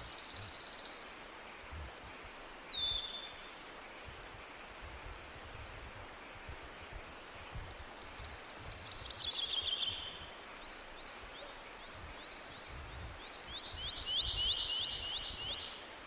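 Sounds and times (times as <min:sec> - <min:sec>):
bird singing a fast trill: 0:13.2 - 0:15.8.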